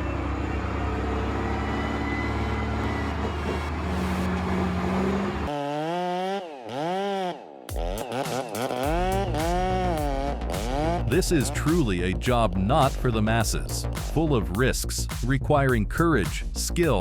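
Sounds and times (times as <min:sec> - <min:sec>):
heavy engine running: 0:00.0 - 0:05.5
chainsaw revving: 0:05.0 - 0:11.8.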